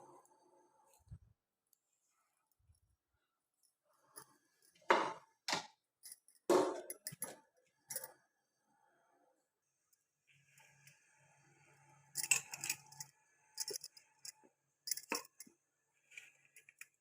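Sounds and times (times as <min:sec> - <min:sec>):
containers and utensils clinking: 0:12.0 - 0:15.5.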